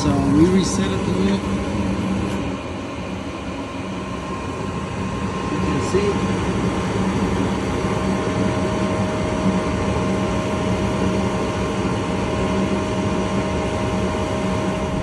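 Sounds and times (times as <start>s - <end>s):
furnace air rushing: 0.0s - 3.2s
furnace motor hum: 0.0s - 15.0s.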